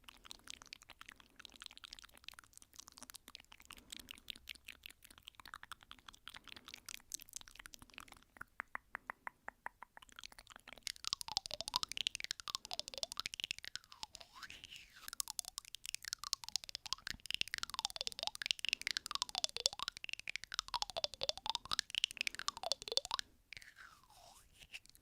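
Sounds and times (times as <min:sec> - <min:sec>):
soft rapid tapping clicks: 0:00.0 - 0:23.9.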